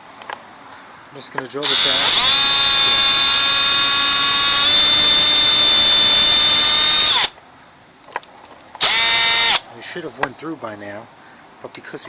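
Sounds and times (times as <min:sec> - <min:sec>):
power drill high whine: 0:01.6 - 0:07.3, 0:08.8 - 0:09.6.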